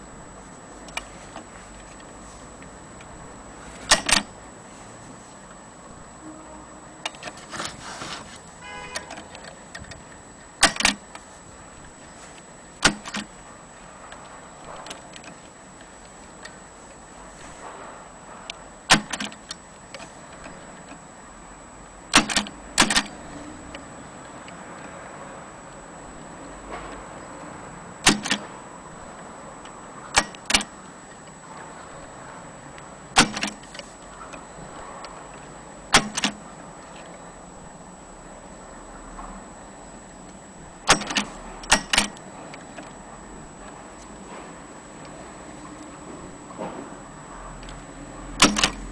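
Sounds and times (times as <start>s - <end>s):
typewriter clacks: 22.1s - 23.2s, 28.0s - 28.4s, 33.2s - 33.6s, 35.9s - 36.4s, 40.9s - 42.1s, 48.4s - 48.9s
quiet mechanical clatter: 40.0s - 47.0s, 47.6s - 48.9s.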